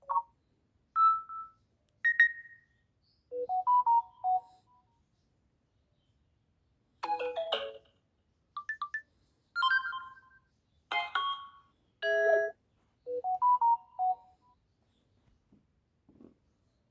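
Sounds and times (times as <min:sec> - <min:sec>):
phone ringtone chimes: 0:09.6 - 0:10.3, 0:10.9 - 0:14.3.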